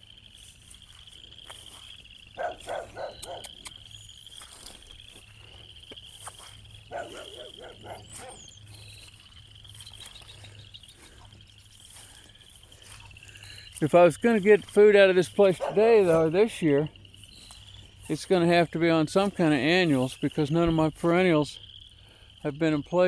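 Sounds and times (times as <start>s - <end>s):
distant dog barking: 2.4s - 3.7s, 6.8s - 8.8s, 15.4s - 16.8s.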